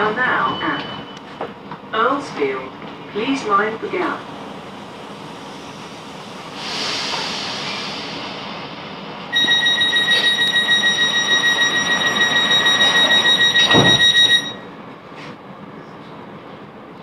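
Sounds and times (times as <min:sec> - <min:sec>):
train door warning beeper: 0:00.0 - 0:01.4, 0:09.3 - 0:14.8.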